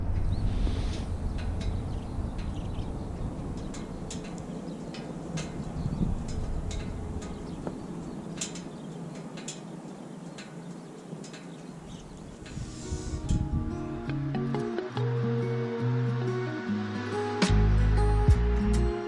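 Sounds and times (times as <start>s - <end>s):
wind rumble on microphone: 0.0s - 14.7s.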